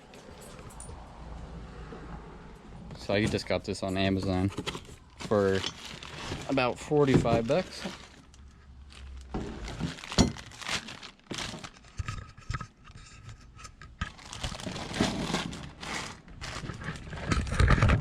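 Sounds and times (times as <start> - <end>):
packaging crinkling and rustling: 4.3 - 12.3, 14.0 - 18.0.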